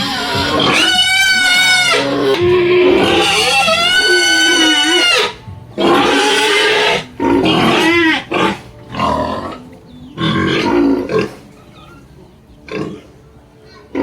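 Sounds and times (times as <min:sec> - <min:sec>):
person calling pigs: 0:00.0 - 0:12.2.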